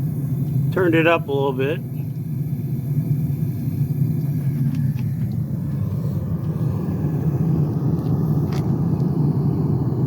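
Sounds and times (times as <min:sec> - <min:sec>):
furnace burner rumbling: 0:00.0 - 0:10.0.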